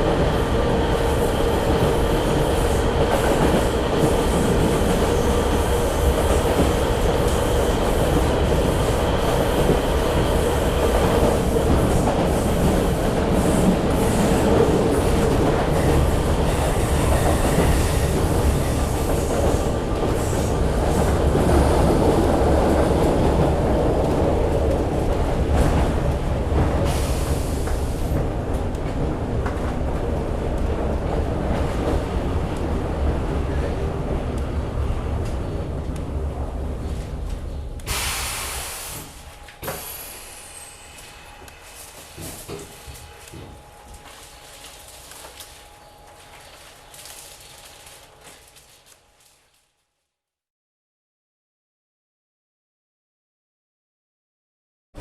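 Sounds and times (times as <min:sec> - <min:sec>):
train rumbling on rails: 0:00.0 - 0:49.5
brief hiss: 0:37.9 - 0:42.5.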